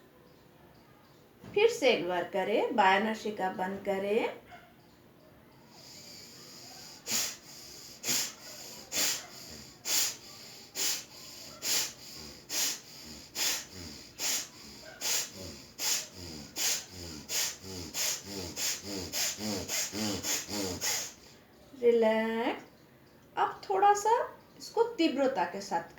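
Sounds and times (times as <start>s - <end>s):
forceful rhythmic nostril breathing: 5.6s - 21.6s.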